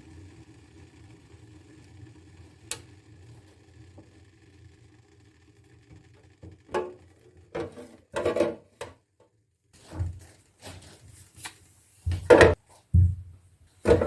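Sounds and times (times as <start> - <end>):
kitchen containers clattering: 6.7 - 9.0, 12.1 - 12.6.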